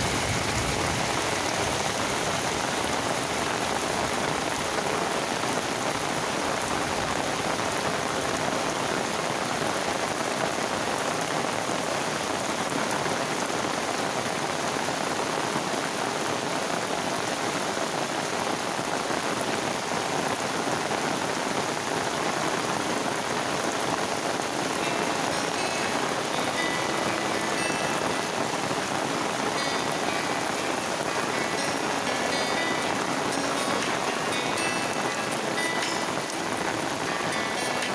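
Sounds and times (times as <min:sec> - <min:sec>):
heavy rain falling: 0:00.0 - 0:37.9.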